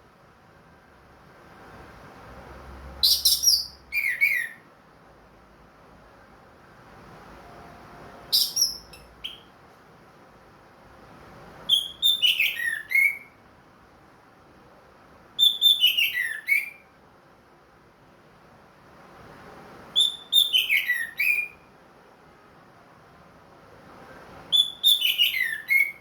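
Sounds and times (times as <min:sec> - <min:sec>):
thrush singing whistled phrases: 0:03.0 - 0:04.6, 0:08.3 - 0:09.5, 0:11.7 - 0:13.4, 0:15.4 - 0:16.9, 0:20.0 - 0:21.7, 0:24.5 - 0:26.0.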